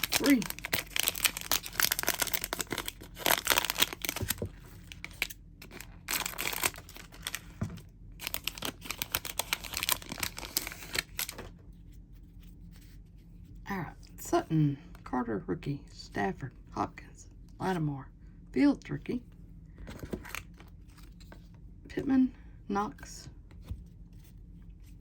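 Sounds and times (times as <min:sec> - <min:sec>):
foil wrapper tearing and crinkling: 0:00.0 - 0:07.5, 0:08.2 - 0:11.5.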